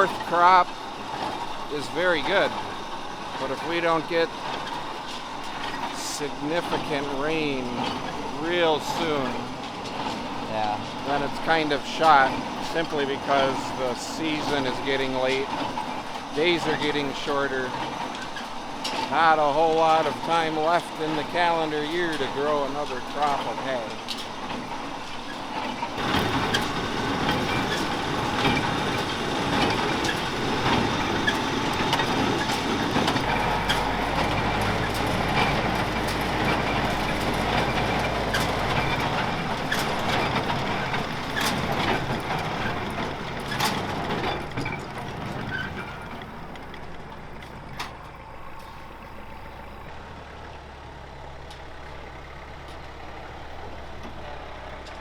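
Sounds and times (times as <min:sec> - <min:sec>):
hay baler clacking: 0:00.0 - 0:55.0
tractor engine running: 0:00.0 - 0:55.0.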